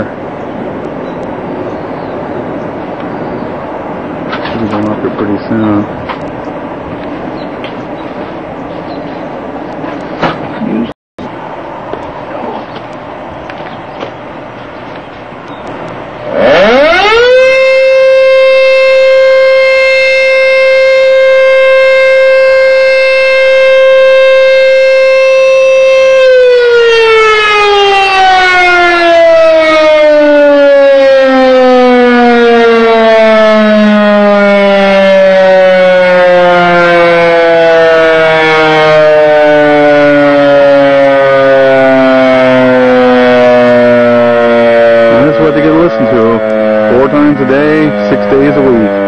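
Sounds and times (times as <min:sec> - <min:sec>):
loud air-raid siren: 0:16.2 - 0:49.0.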